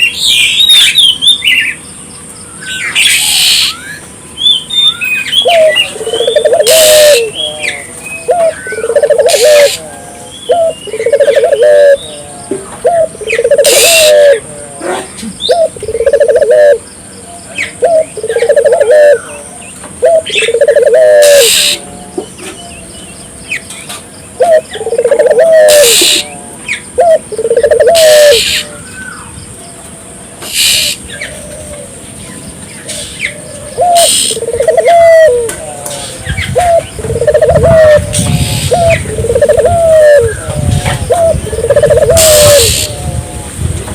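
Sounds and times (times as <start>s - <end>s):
small birds chirping: 0.0s - 43.4s
doves cooing: 5.4s - 16.9s, 17.6s - 22.6s, 24.4s - 28.9s, 30.5s - 32.1s, 32.9s - 43.6s.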